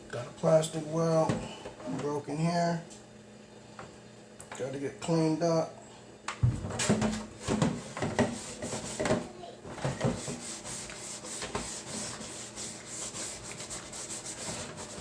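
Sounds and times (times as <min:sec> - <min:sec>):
scrubbing plastic by hand: 0:07.4 - 0:15.0.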